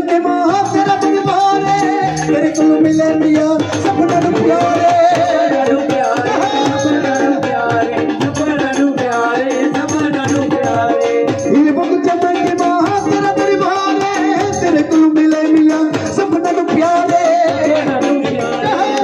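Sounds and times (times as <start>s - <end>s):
folk melody with wavering notes: 0.0s - 15.2s
drum and rattle rhythm: 0.0s - 19.0s.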